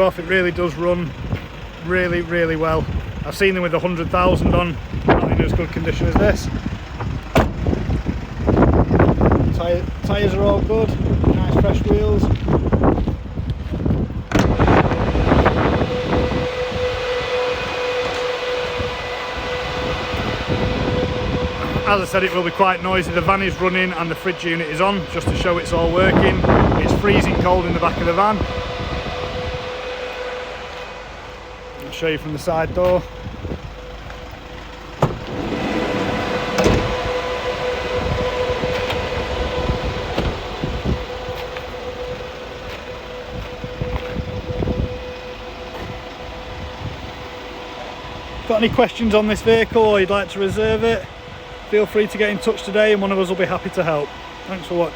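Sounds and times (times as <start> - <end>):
diesel engine idling: 0.0 - 54.9
refrigeration unit hum and whine: 4.2 - 54.9
sliding door opening: 35.0 - 40.6.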